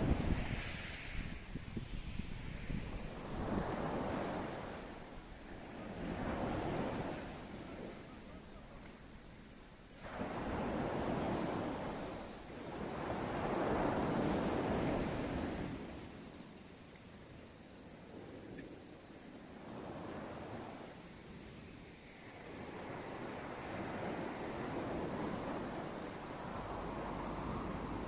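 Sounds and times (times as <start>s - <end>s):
sea waves washing on shore: 0.0s - 9.2s, 10.0s - 16.5s, 22.2s - 28.0s
thin steady high tone: 0.2s - 28.0s.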